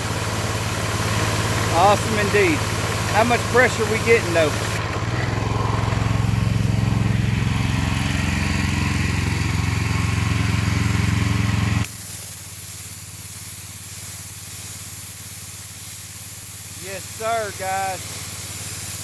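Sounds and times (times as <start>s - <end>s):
water spray hissing: 0.0s - 4.8s, 11.8s - 19.0s
small engine running: 0.0s - 19.0s.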